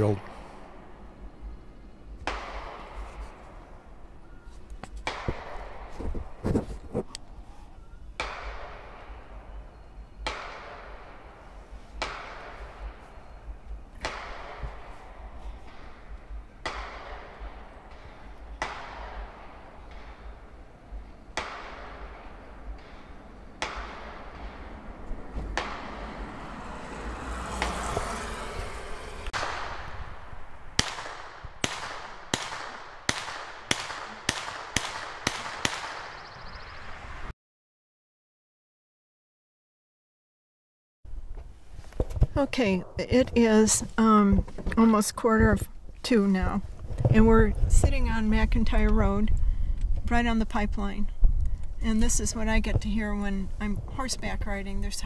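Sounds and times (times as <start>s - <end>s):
distant echoing gunshots: 0.0s - 6.4s, 8.0s - 37.2s.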